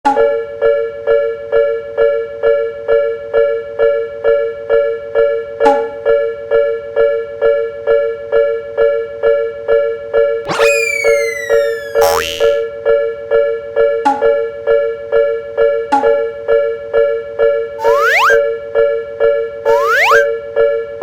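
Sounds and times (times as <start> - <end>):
falling swish: 10.5 - 12.6, 17.8 - 18.4, 19.7 - 20.3.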